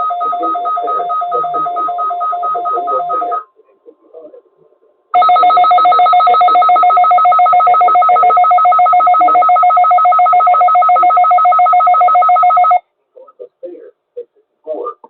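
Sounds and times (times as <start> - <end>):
pulsing electronic alarm: 0.0 - 3.4, 5.2 - 12.8.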